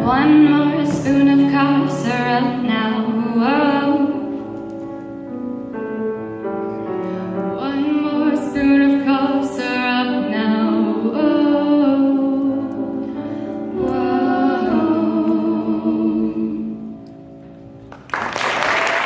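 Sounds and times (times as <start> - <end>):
women singing in harmony: 0.0 - 4.5, 7.6 - 17.1.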